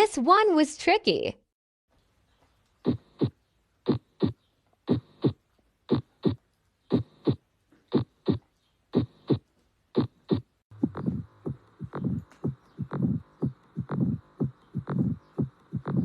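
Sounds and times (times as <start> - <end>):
heartbeat through stethoscope: 2.9 - 8.4, 9.0 - 9.4, 10.0 - 16.0.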